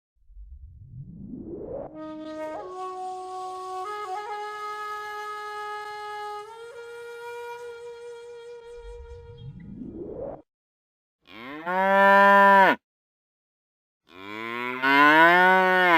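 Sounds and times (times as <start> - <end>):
rising swoosh: 0.2 - 2.1, 8.7 - 10.5
reedy wind instrument tone: 1.9 - 9.8.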